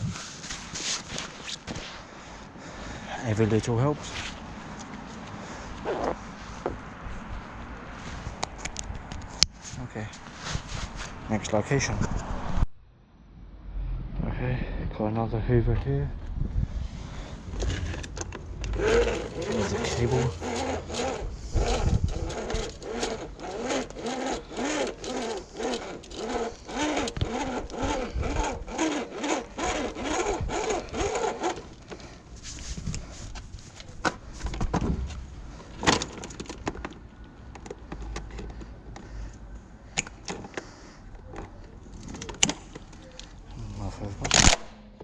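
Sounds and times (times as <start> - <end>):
rhythmic sawing: 18.7 - 31.8.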